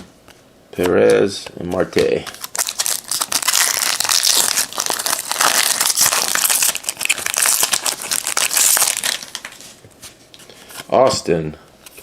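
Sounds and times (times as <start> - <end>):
card pack wrapper crinkling: 2.0 - 9.6.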